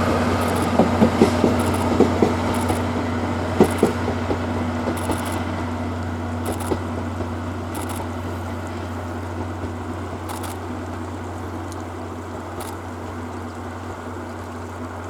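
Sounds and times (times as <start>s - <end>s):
train rumble and hiss: 0.0s - 15.0s
camera shutter clicks: 0.4s - 0.7s, 2.6s - 2.8s, 5.0s - 5.4s, 6.5s - 6.8s, 7.8s - 8.1s, 10.3s - 10.6s, 12.6s - 12.8s.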